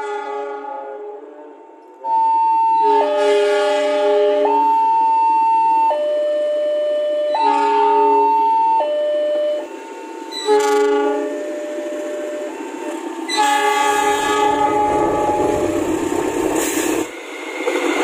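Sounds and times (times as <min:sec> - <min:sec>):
locomotive air horn: 0:00.0 - 0:01.7, 0:02.7 - 0:04.8, 0:07.3 - 0:08.9, 0:10.3 - 0:12.5, 0:13.3 - 0:16.2
loud horn chord: 0:02.8 - 0:04.5, 0:13.4 - 0:16.4.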